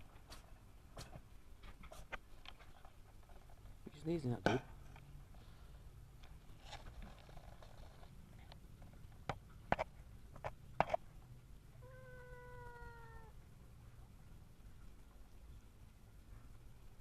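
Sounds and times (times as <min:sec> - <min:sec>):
cat meowing: 0:11.8 - 0:13.4.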